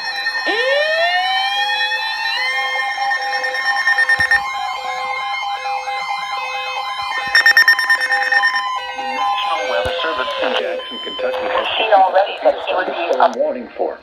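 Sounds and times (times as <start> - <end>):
siren-like warble: 0.4 - 6.4, 7.0 - 9.8
steady alert tones: 2.6 - 4.5, 7.0 - 8.7
on-off beeping tone: 2.8 - 4.5, 7.0 - 11.9
buzzy data bursts: 3.1 - 4.4, 7.2 - 8.6.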